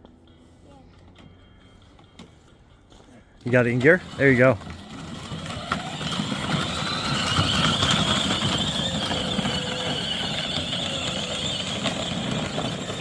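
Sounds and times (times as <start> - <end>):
electric motors whining: 3.5 - 13.0.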